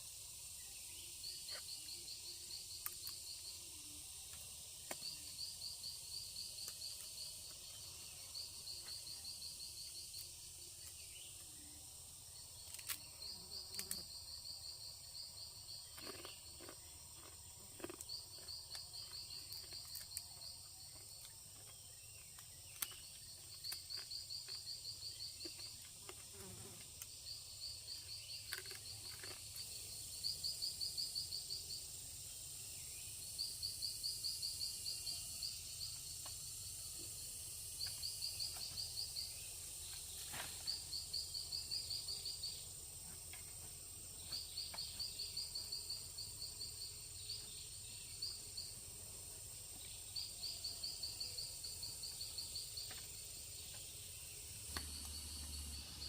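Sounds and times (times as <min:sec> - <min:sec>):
insect trills: 0:00.0 - 0:56.0
high-pitched insect drone: 0:50.1 - 0:56.0.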